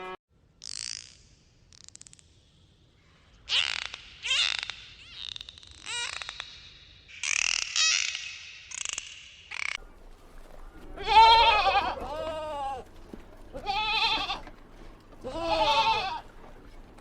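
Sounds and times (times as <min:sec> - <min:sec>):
high squeaky animal calls: 0:03.4 - 0:09.8, 0:13.5 - 0:14.5
goat bleating: 0:10.9 - 0:16.4.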